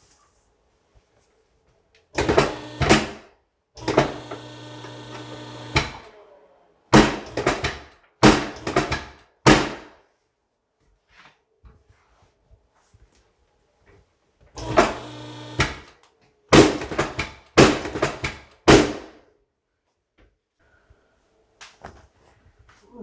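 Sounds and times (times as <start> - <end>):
loud sharp knocks and thuds: 6.9 - 9.9, 16.5 - 19.1.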